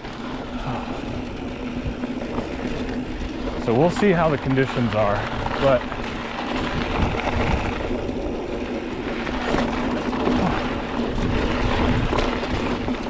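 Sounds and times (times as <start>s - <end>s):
tyres rolling over dirt: 0.0s - 13.0s
wind rushing over microphone: 0.4s - 13.0s.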